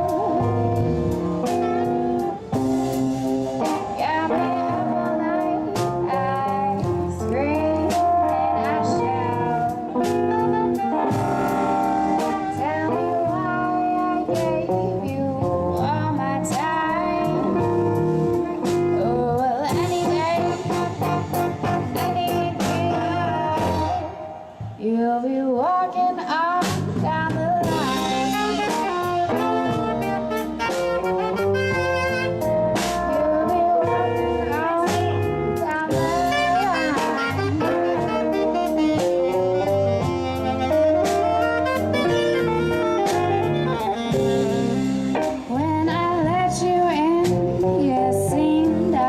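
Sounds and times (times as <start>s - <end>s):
bass guitar: 0.0s - 25.1s, 26.3s - 49.0s
drum kit: 0.0s - 25.1s, 25.7s - 49.0s
saxophone lead line: 0.0s - 25.1s, 27.1s - 49.0s.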